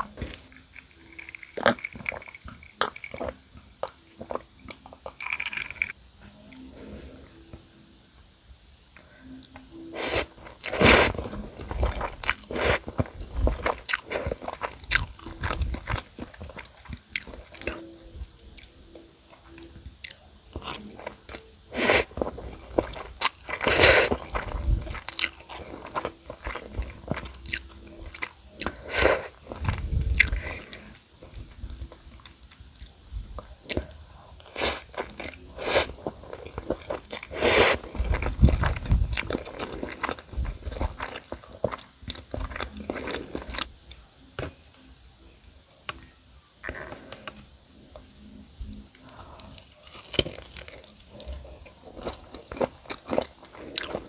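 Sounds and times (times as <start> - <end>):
quiet chewing: 0.0 - 7.7, 8.9 - 54.0
crunching bites of fried chicken: 49.1 - 54.0.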